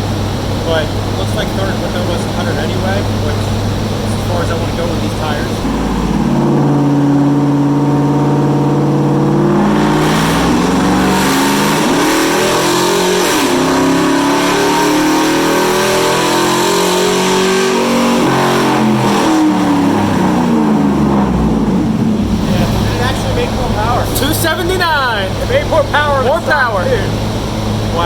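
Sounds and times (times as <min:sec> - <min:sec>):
engine revving under full throttle: 0:00.0 - 0:28.0.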